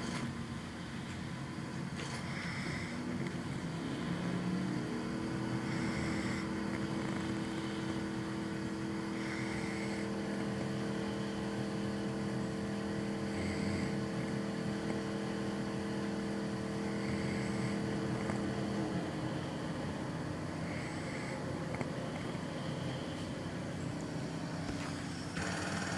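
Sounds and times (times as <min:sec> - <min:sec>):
steady low hum: 0:00.0 - 0:25.9
man snoring: 0:01.9 - 0:11.6, 0:12.9 - 0:15.5, 0:16.3 - 0:19.3, 0:20.6 - 0:22.5, 0:25.4 - 0:25.9.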